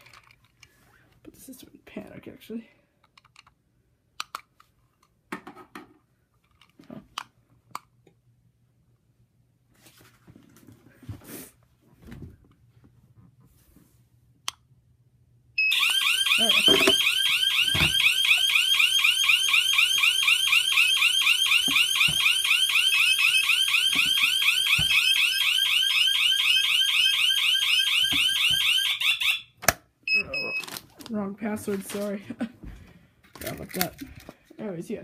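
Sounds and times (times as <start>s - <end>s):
electronic alarm siren sweeping: 15.6s - 29.5s.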